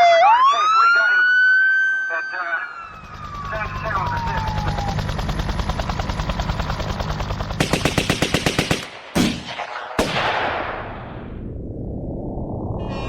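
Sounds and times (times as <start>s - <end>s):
machine gun firing: 6.7s - 11.1s
single gunshots with echo: 7.6s - 11.1s.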